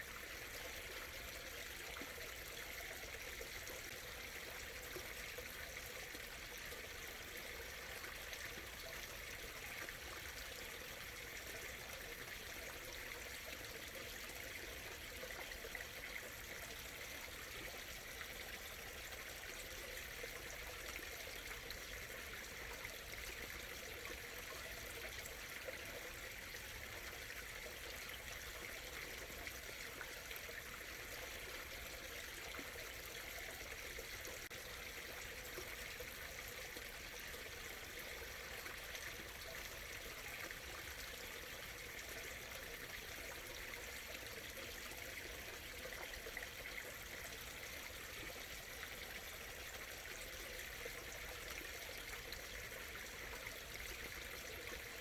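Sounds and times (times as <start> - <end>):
stream trickling over stones: 0.0 - 55.0.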